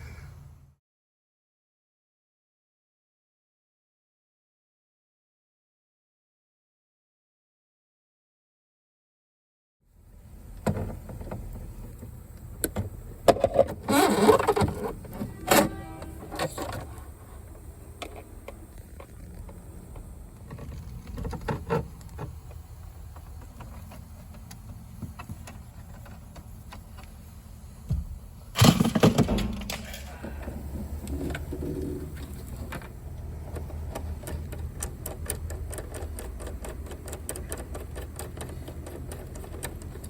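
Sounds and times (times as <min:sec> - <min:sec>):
low steady hum: 0:09.9 - 0:40.0
rustling clatter: 0:28.6 - 0:40.0.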